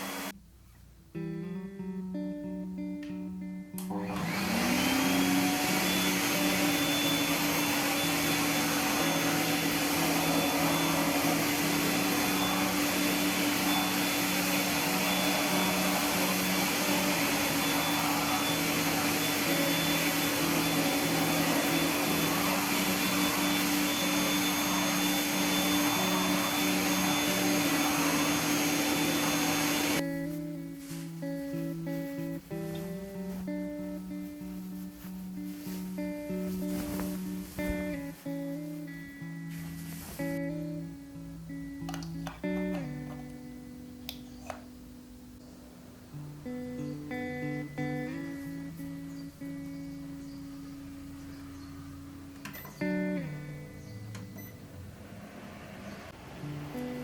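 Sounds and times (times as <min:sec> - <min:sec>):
electric appliance motor running: 0:00.0 - 0:00.3, 0:03.9 - 0:30.0.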